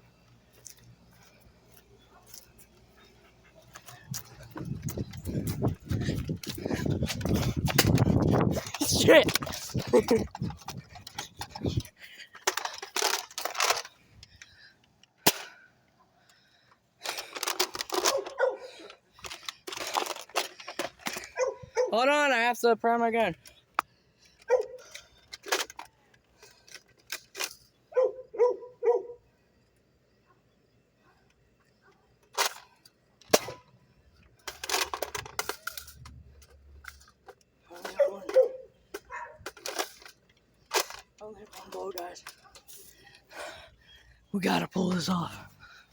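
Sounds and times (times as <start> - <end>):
rustling and scuffling: 0.4 - 14.0.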